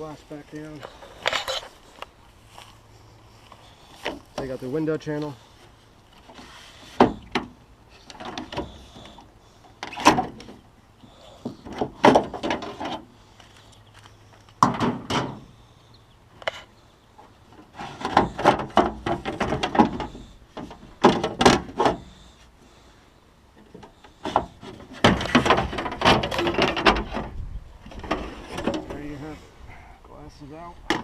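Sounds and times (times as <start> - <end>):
metal clunks and scrapes in car door: 6.2 - 9.2, 11.3 - 13.1, 14.6 - 15.5, 17.5 - 22.2, 23.6 - 29.2.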